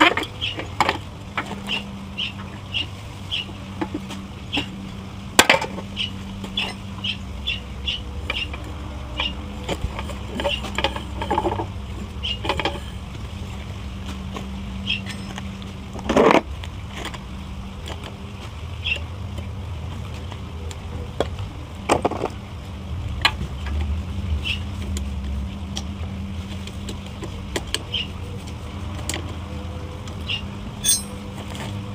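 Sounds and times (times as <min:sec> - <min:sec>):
tools and metal parts clicking: 0:30.8 - 0:31.7.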